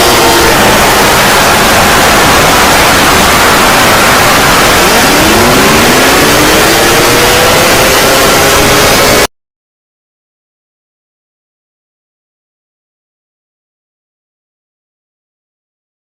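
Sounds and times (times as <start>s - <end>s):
harsh static noise: 0.0s - 9.3s
tone gliding upward: 0.0s - 9.3s.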